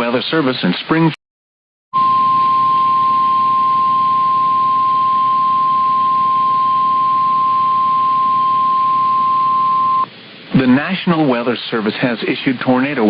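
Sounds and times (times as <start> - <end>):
steady high-pitched alarm tone: 2.0 - 10.1
receiver hiss: 2.0 - 13.0.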